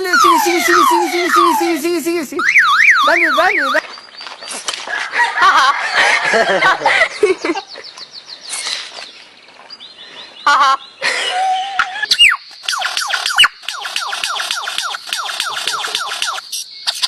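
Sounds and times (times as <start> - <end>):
birds chirping and squawking: 12.0 - 17.0.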